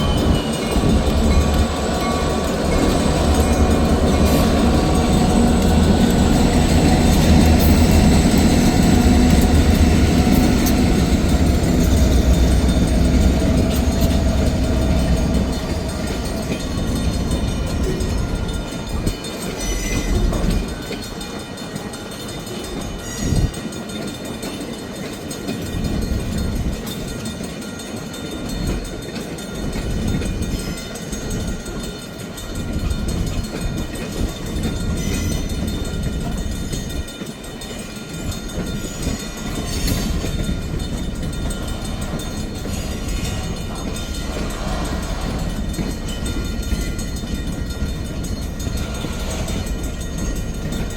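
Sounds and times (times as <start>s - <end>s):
train rumbling on rails: 0.0s - 50.9s.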